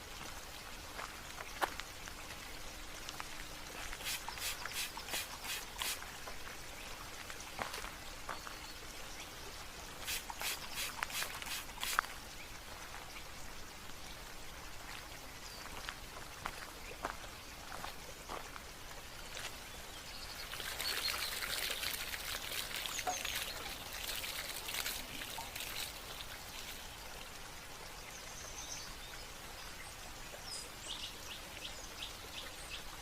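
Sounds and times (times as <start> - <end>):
water trickling and dripping: 0.0 - 33.0
birds chirping: 3.8 - 6.0, 10.0 - 12.1, 19.8 - 25.9.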